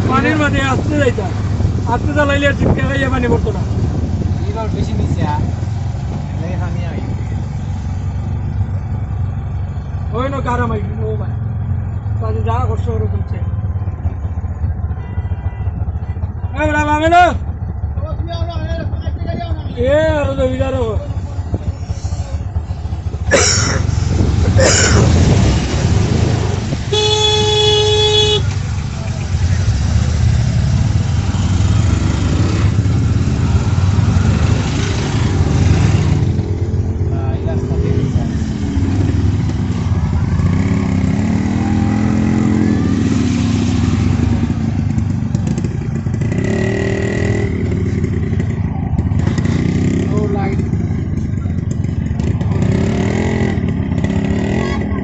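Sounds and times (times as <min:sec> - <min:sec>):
vehicle horn honk: 0:14.9 - 0:16.2, 0:26.9 - 0:28.6
motorcycle engine revving: 0:19.7 - 0:55.0.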